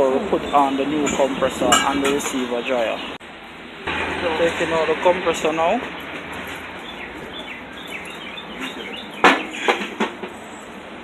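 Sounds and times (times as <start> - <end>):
sharp metal knocks: 1.0 - 2.4, 8.6 - 10.4.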